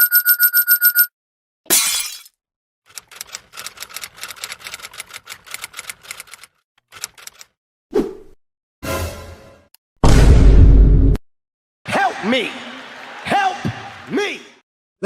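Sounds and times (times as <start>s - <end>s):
quick irregular clicks: 2.9s - 7.6s.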